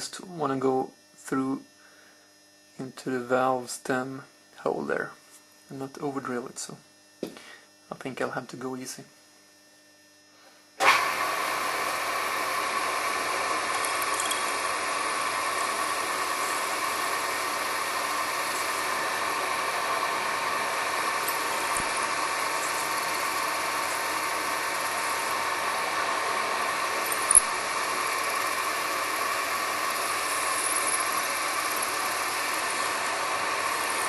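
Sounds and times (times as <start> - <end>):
milling machine drilling plastic: 10.8 - 34.0.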